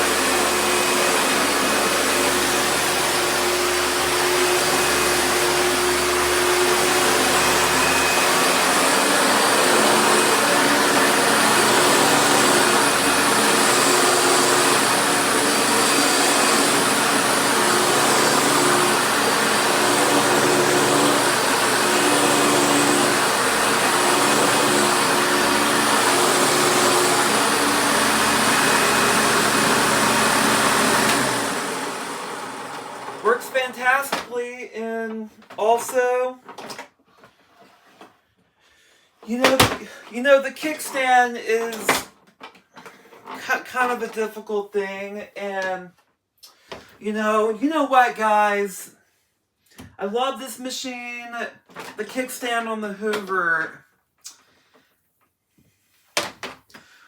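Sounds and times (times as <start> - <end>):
vacuum motor winding down: 0.0 - 33.8
upright vacuum cleaner running: 0.0 - 34.3.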